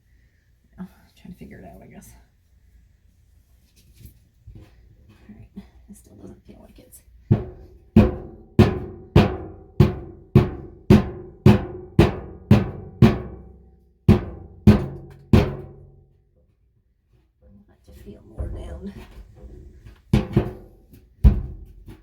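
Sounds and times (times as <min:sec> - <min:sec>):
rock hammering tin bathtub: 0:07.3 - 0:13.5, 0:18.1 - 0:22.0.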